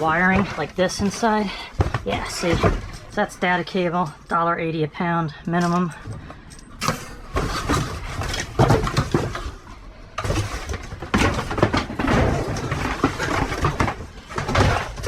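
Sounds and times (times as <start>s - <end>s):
plastic and metal clinks: 0.0s - 4.6s, 5.4s - 15.0s
cardboard scraping and rustling: 7.3s - 15.0s.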